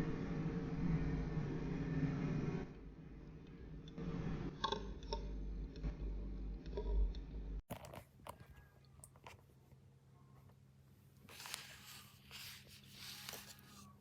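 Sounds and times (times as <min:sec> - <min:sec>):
low rumble: 0:00.0 - 0:07.6
small clicks and handling noises: 0:07.7 - 0:09.6.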